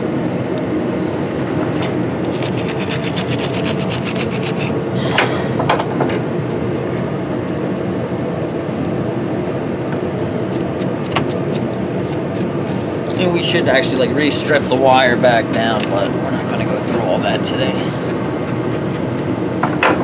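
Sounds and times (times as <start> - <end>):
shop hum: 0.0 - 20.0
scraping battery terminal: 2.2 - 4.8.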